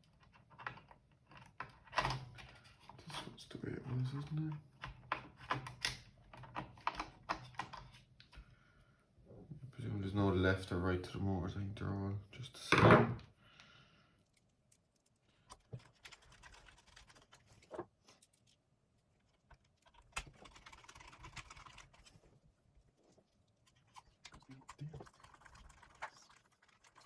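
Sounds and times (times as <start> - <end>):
small plastic parts clicking and rustling: 0.0 - 8.4, 14.2 - 18.6, 19.2 - 22.3.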